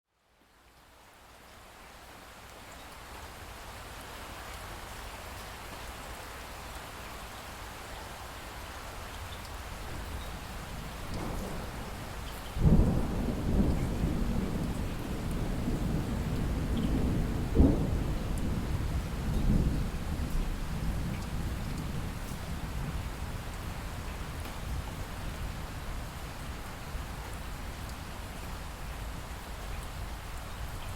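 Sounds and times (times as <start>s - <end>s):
rain hiss: 0.4s - 30.9s
thunder rumbling: 10.8s - 23.0s.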